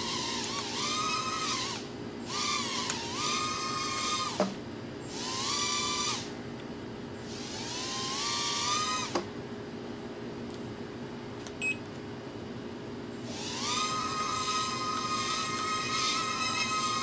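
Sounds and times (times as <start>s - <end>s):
small drone motors whining: 0.0s - 6.3s, 7.3s - 9.2s, 13.2s - 17.0s.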